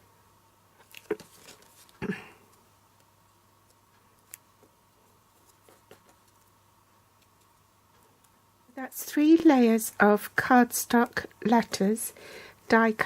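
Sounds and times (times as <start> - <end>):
paper handling ticks: 0.8 - 8.4.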